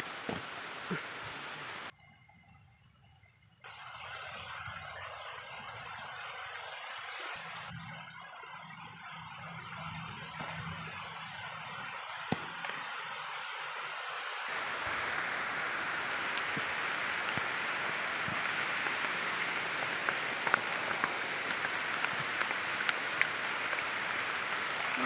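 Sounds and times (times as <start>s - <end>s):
food sizzling in oil: 14.4s - 25.0s
oil popping and crackling: 14.5s - 25.0s.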